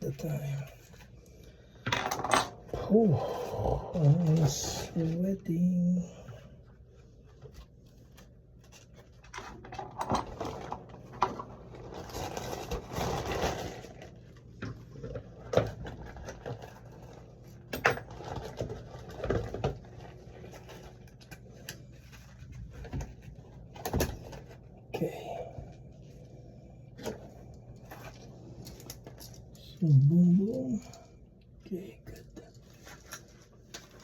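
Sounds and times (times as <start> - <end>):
rustling and scraping: 6.6 - 24.8, 25.7 - 29.7, 32.2 - 34.0.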